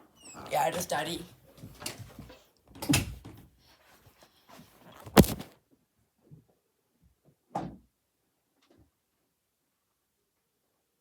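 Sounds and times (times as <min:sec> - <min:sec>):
sharp loud thump: 0:05.0 - 0:05.5.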